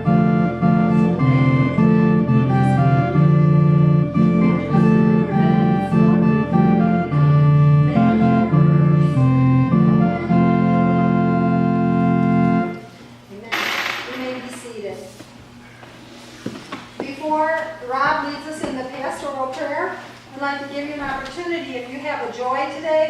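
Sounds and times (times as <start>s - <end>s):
organ playing chords: 0.0s - 13.0s.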